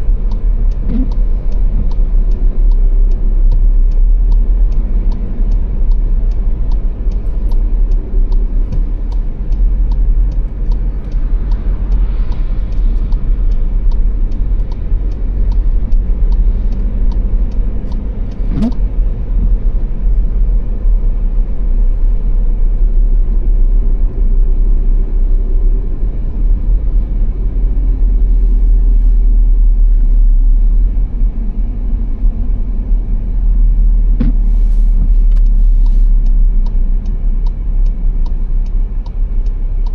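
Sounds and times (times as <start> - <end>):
regular ticking: 0.0 - 20.4
car road and engine rumble: 0.0 - 39.9.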